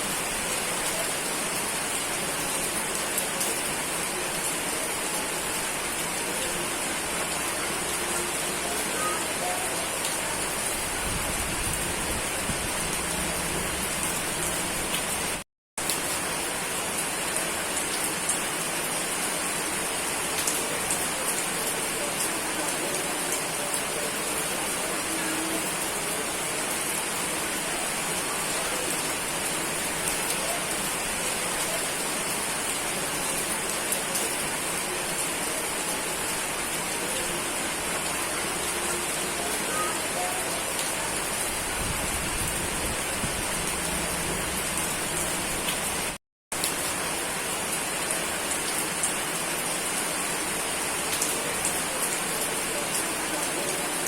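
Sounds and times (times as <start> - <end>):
steady rain hiss: 0.0 - 54.0
raindrops pattering: 20.1 - 54.0.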